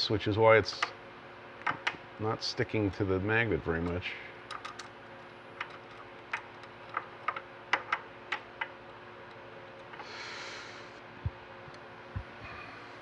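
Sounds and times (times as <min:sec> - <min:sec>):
small metal parts clicking: 0:04.5 - 0:04.9, 0:05.6 - 0:10.1.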